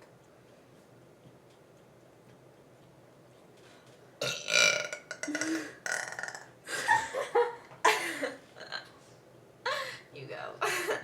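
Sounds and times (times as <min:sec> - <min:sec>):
person burping loudly: 0:04.2 - 0:06.6.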